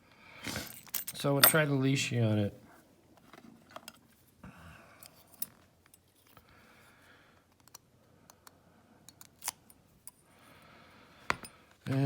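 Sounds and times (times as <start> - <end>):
lock pick clicking in padlock: 9.1 - 9.8.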